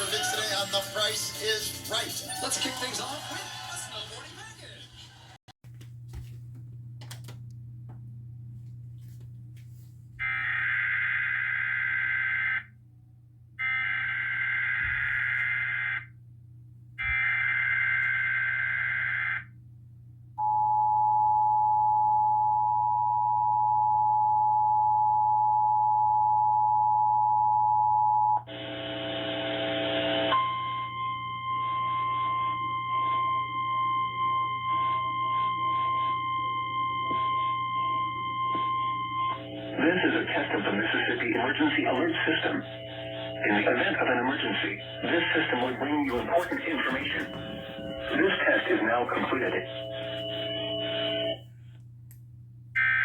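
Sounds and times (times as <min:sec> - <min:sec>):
low hum: 0:30.4 - 0:53.0
steady high tone: 0:31.9 - 0:51.4.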